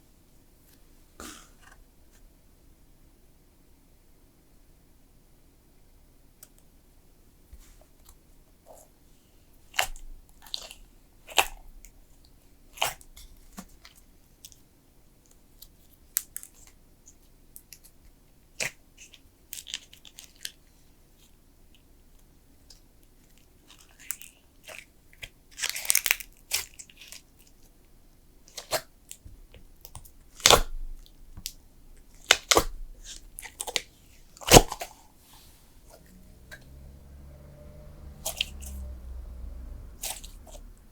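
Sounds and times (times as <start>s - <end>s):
slime popping and crackling: 31.4s - 34.9s.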